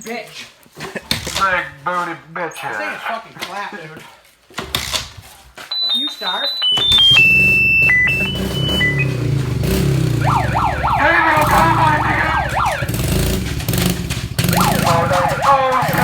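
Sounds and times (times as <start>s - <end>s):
electronic siren alarm: 5.7s - 13.6s, 14.4s - 16.0s
engine running: 6.9s - 16.0s.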